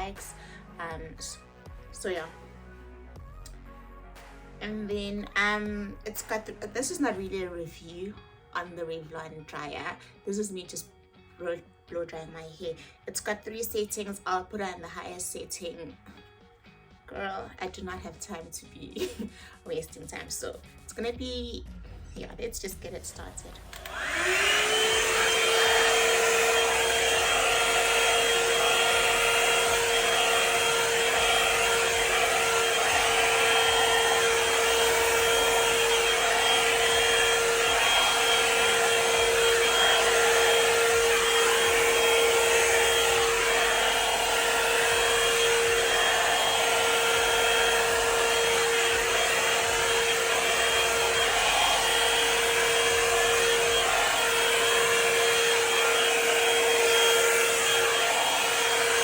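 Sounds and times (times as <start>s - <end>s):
hot-air brush dryer running: 23.2s - 59.0s.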